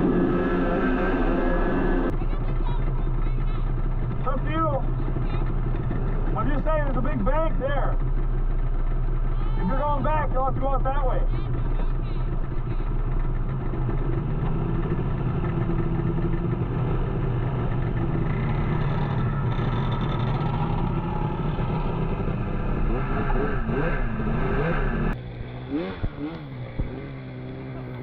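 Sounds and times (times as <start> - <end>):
snowmobile engine running: 0.0 - 28.0.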